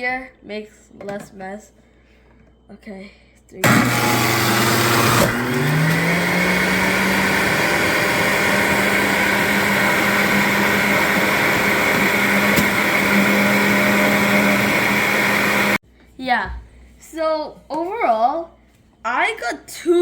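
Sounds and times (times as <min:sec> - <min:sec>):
juicer motor humming: 0:03.6 - 0:15.8.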